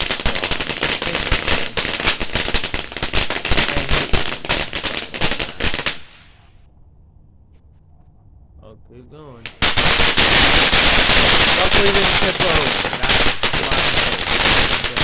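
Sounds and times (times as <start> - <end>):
firework fountain crackling and hissing: 0.0 - 6.6, 9.4 - 15.0.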